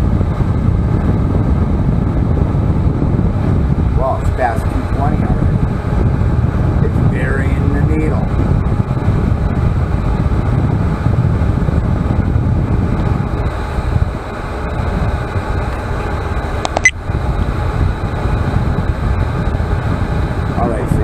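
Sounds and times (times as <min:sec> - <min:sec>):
heater fan rushing air: 0:00.0 - 0:21.0
brief click: 0:16.7 - 0:17.0.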